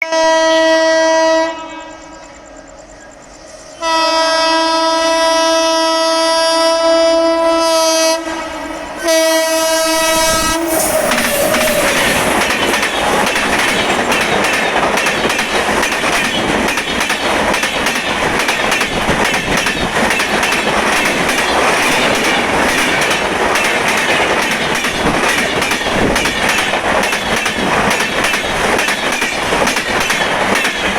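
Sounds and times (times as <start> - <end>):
twin-tone train horn: 0.0 - 2.4, 3.7 - 13.7
train wheels clattering on rails: 7.6 - 30.9.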